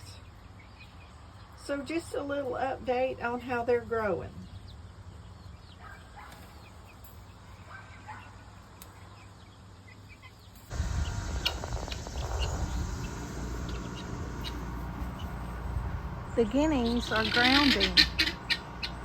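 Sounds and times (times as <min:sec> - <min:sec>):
outdoor background noise: 0:00.0 - 0:19.0
chicks peeping: 0:08.8 - 0:19.0.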